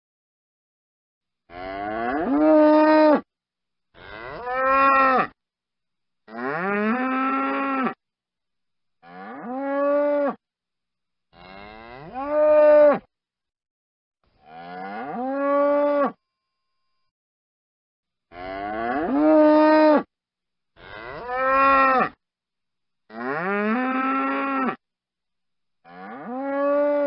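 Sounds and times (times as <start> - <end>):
bull mooing: 20.8 - 22.2, 25.9 - 27.0.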